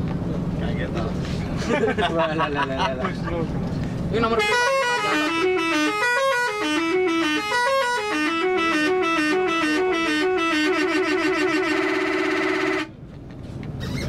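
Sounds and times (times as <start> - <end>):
bus horn playing a melody: 4.2 - 13.0.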